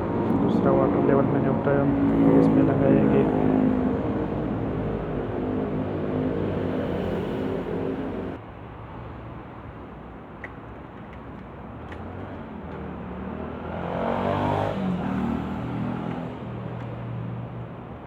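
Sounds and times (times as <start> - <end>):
motor vehicle passing: 0.0 - 8.4, 11.8 - 17.4.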